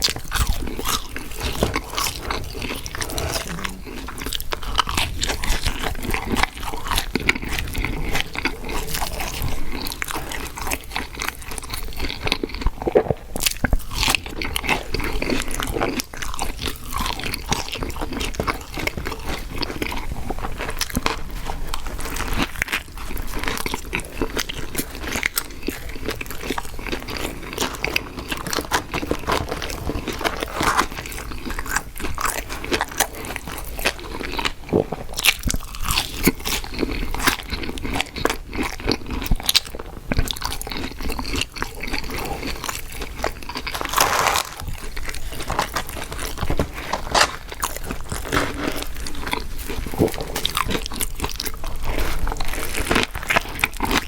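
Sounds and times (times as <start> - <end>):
wet mouth sounds: 0.0 - 18.7
person chewing crunchy food: 0.0 - 54.0.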